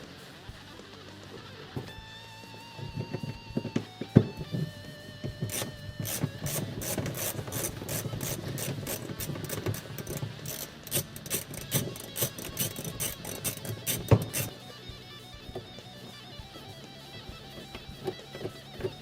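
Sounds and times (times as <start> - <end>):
hand ratchet clicking: 2.8 - 14.8.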